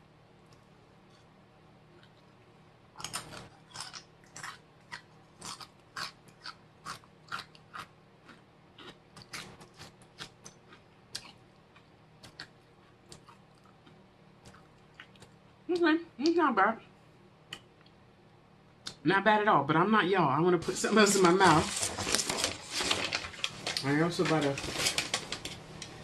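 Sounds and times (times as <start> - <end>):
chewing crunchy chips: 2.0 - 15.4.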